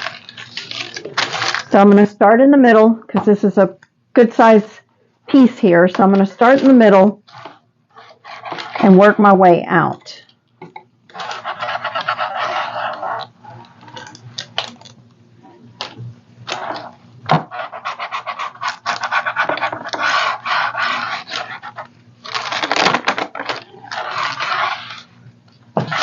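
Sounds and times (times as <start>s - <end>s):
scratchy rubbing on a tray: 7.3s - 9.1s, 11.2s - 13.7s, 16.6s - 22.0s, 23.8s - 25.2s.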